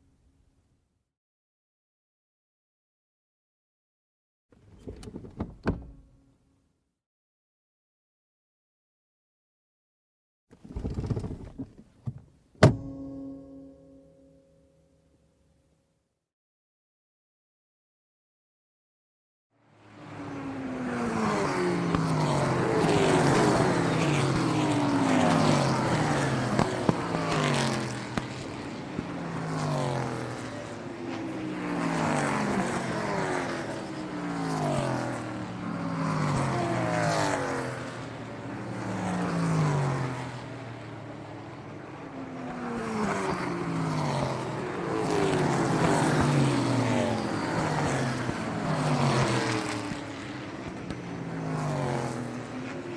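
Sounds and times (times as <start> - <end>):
car engine starting and running: 10.6 - 14.0.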